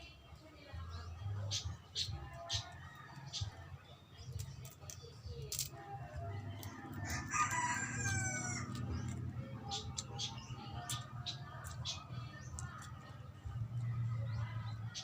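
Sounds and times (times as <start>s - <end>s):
rooster crowing: 7.0s - 9.0s.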